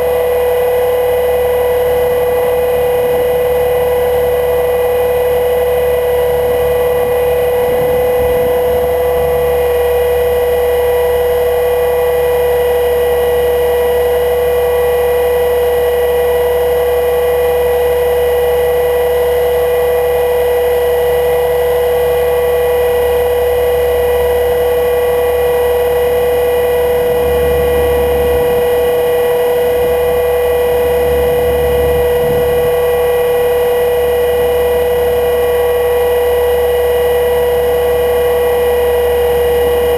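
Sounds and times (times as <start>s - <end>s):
low rumble of wind gusts: 0.0s - 12.8s, 24.2s - 36.6s
rc helicopter motor whine: 0.0s - 39.9s.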